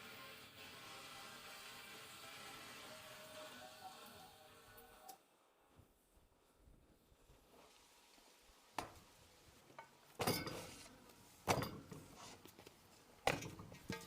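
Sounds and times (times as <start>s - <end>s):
kitchenware clinking: 9.8s - 10.8s, 13.3s - 14.0s.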